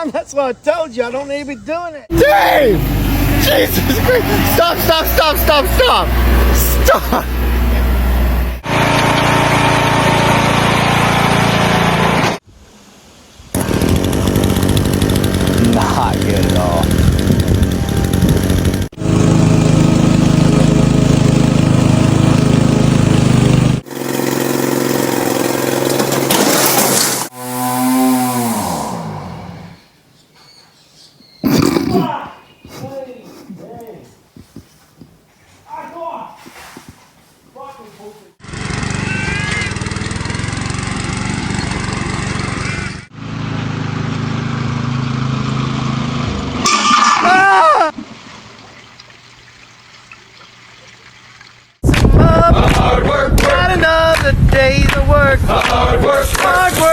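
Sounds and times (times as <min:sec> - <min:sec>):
lawn mower engine running: 0:02.1 - 0:12.4, 0:13.6 - 0:29.5, 0:38.4 - 0:47.3, 0:51.8 - 0:56.9.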